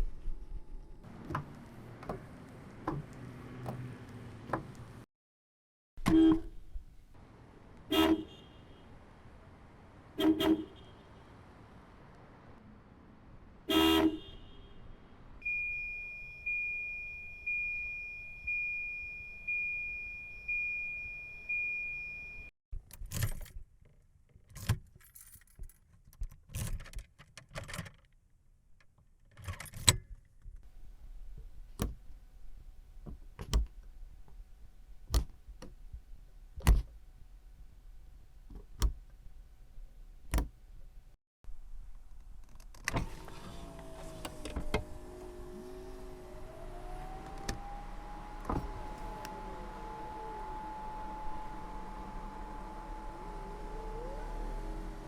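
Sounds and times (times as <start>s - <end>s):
car warning chime: 15.4s - 22.5s, 45.9s - 55.0s
keys jingling: 24.9s - 26.0s.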